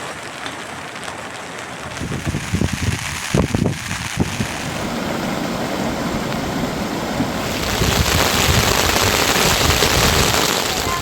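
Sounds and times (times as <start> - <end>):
heavy rain hissing: 0.0 - 11.0.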